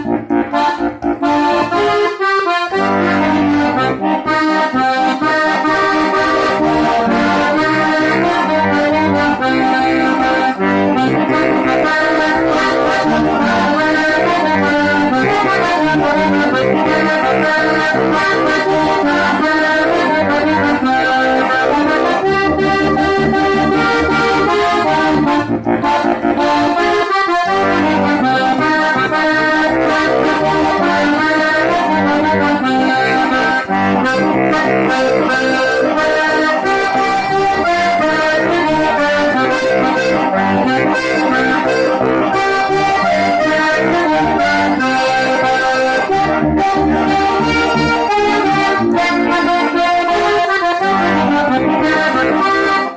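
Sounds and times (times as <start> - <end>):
accordion folk music: 0.0 - 52.9.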